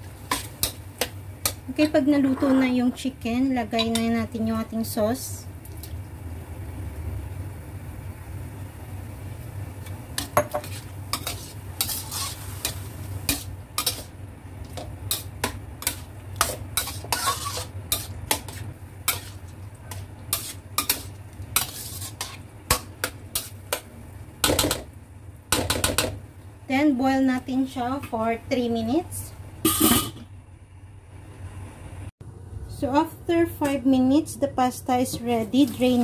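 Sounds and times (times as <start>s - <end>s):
light sizzle: 0.0s - 36.0s
utensil scraping a pan: 2.0s - 3.0s, 10.2s - 14.1s, 14.8s - 23.6s
steady low hum: 26.2s - 36.0s.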